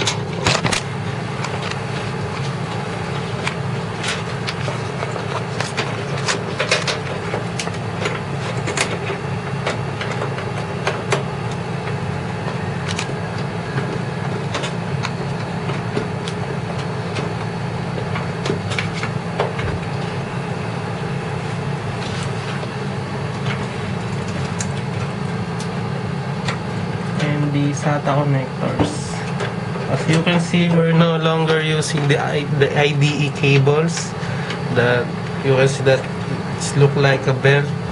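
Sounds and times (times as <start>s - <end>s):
steady low hum: 0.0s - 37.9s
connectors clicking and tapping: 12.8s - 17.4s.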